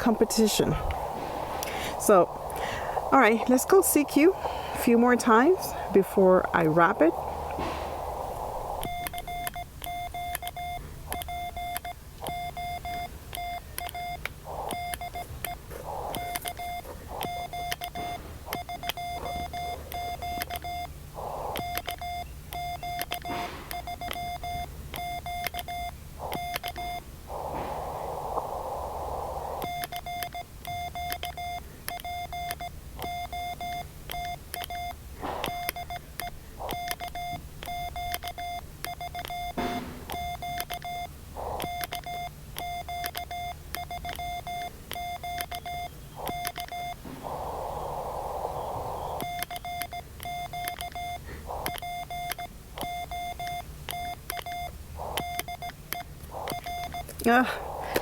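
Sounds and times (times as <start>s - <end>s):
radio hiss: 0.0s - 10.3s, 13.6s - 24.3s, 26.0s - 30.2s, 33.0s - 38.6s, 39.3s - 42.4s, 45.3s - 49.8s, 51.2s - 53.5s, 54.6s - 58.0s
morse code beeps: 0.0s - 58.0s.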